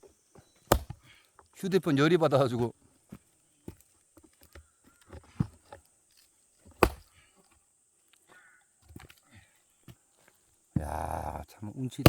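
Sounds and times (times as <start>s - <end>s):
axe splitting firewood: 0.0s - 1.6s, 6.6s - 7.3s.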